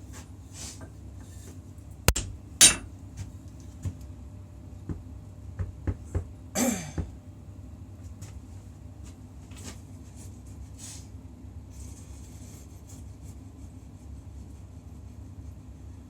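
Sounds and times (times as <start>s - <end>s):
steady low hum: 0.0s - 16.0s
tools knocking: 2.1s - 2.9s.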